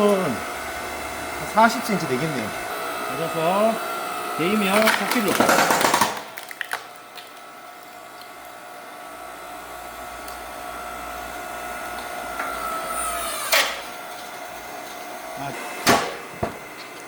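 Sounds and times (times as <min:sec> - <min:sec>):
hydraulic log splitter whining: 0:00.0 - 0:17.0
wood cracking: 0:04.7 - 0:08.3.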